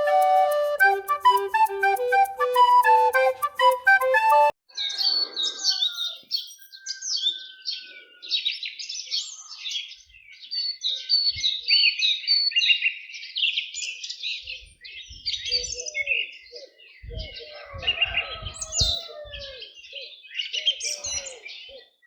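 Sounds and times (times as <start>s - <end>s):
songbirds singing: 4.7s - 22.0s.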